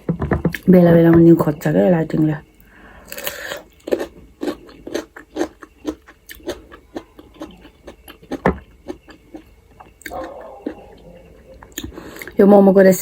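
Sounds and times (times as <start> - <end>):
close chewing with wet mouth clicks: 3.1 - 12.4.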